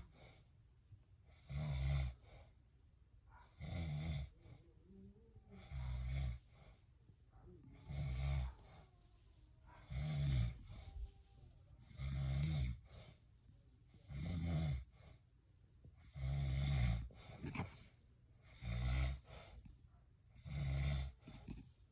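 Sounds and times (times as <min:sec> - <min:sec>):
quiet breathing: 0:00.0 - 0:21.9
deep rasping snores: 0:01.4 - 0:02.2, 0:03.6 - 0:04.3, 0:11.9 - 0:12.8, 0:14.1 - 0:14.9, 0:16.0 - 0:17.7, 0:18.5 - 0:19.3, 0:20.4 - 0:21.6.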